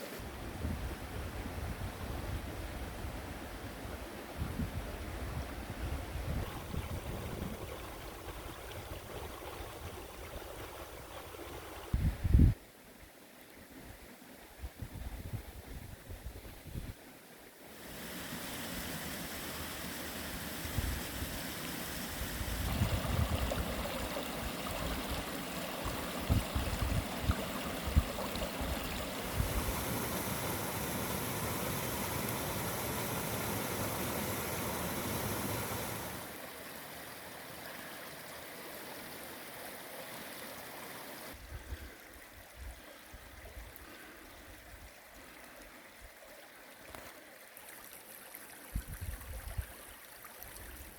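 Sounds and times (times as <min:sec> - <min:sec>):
running water rushing: 0:00.0 - 0:00.2, 0:06.3 - 0:12.1, 0:17.5 - 0:50.9.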